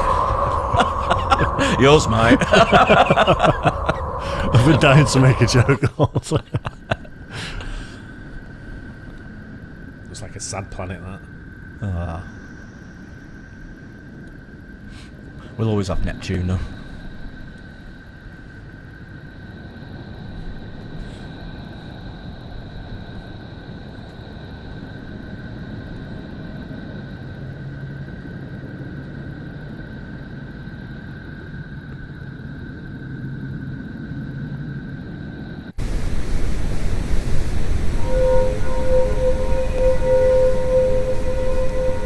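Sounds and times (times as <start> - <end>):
faint high tones: 0.0 - 5.9, 37.9 - 42.0
low rumbling drone: 0.0 - 14.4, 33.4 - 42.0.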